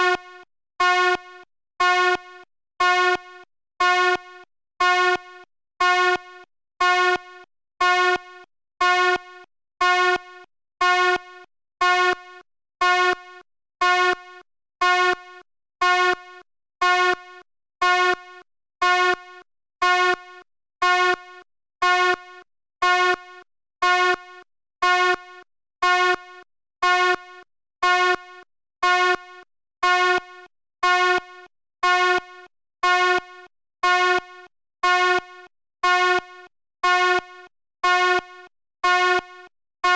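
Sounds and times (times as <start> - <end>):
fire alarm horn blasts: 0.0 - 39.9.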